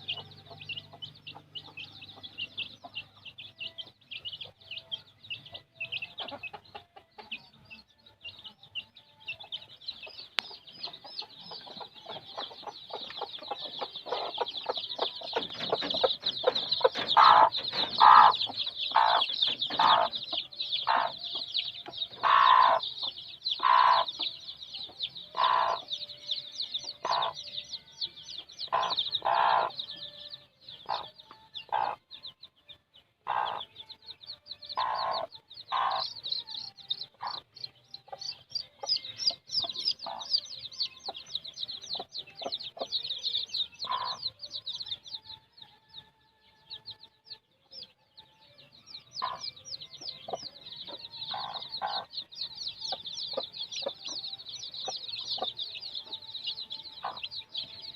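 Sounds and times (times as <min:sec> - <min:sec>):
hen clucking: 0:00.0 - 0:04.7, 0:05.5 - 0:07.6, 0:10.0 - 0:26.0, 0:26.8 - 0:27.5, 0:28.4 - 0:29.9, 0:30.8 - 0:32.0, 0:33.2 - 0:33.8, 0:34.7 - 0:36.3, 0:37.0 - 0:44.4, 0:49.1 - 0:57.9
chicks peeping: 0:00.0 - 0:57.9.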